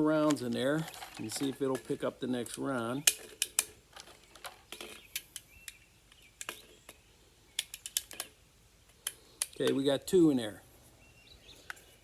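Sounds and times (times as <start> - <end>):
cartridges clicking into magazine: 2.5 - 3.8, 7.6 - 8.3.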